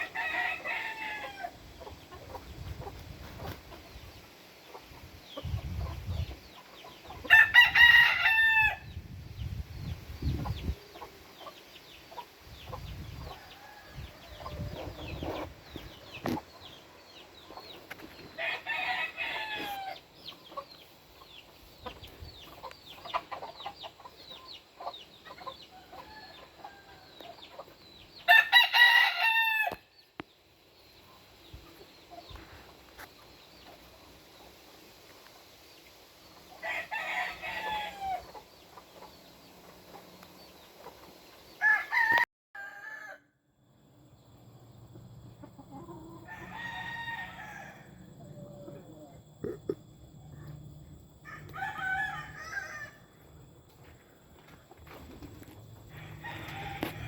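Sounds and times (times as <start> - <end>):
roosters crowing: 0.0 - 2.2, 7.0 - 9.0, 12.8 - 16.7, 17.6 - 20.7, 24.6 - 30.0, 36.4 - 39.4, 41.5 - 43.4, 45.7 - 49.3, 50.0 - 53.5, 55.2 - 57.0
hens clucking and chirping: 0.0 - 28.6, 29.5 - 42.2, 43.7 - 57.0.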